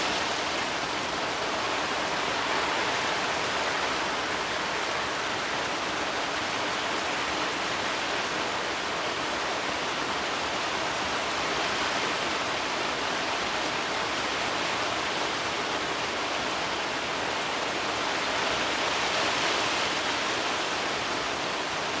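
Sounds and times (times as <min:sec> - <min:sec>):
campfire flames hissing: 0:00.0 - 0:07.3.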